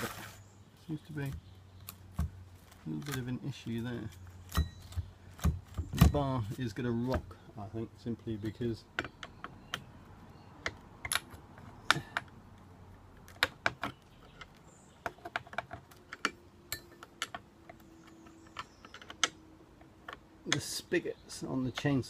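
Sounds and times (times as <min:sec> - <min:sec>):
metal parts clicking and knocking: 0:13.2 - 0:20.7.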